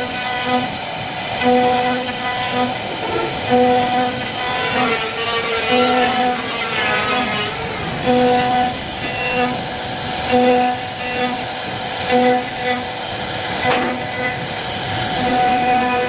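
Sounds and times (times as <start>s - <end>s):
router motor whine: 0.0s - 13.0s
lower machine tone: 1.4s - 11.5s.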